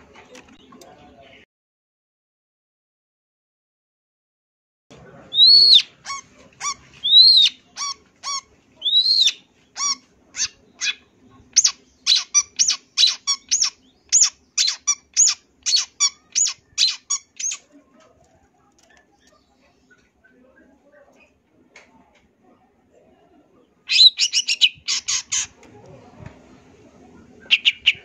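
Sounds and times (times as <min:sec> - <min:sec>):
bird singing: 0:05.3 - 0:17.7, 0:23.9 - 0:25.5, 0:27.4 - 0:28.0.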